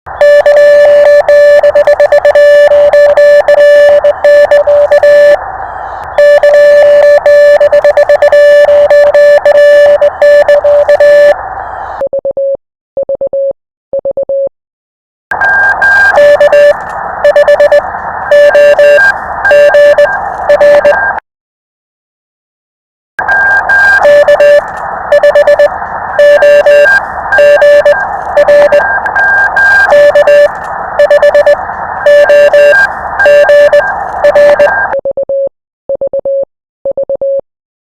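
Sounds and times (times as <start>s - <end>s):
morse code tone: 0.1s - 11.4s, 15.3s - 21.2s, 23.2s - 37.4s
radio receiver hiss: 0.1s - 12.0s, 15.3s - 21.2s, 23.2s - 34.9s.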